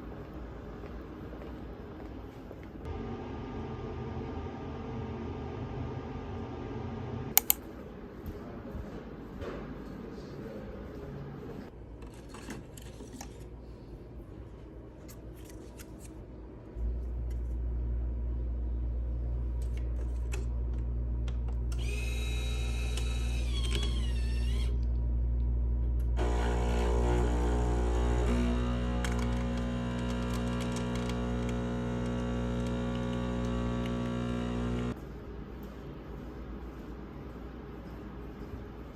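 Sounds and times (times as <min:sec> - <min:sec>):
low machine hum: 0:16.8 - 0:35.1.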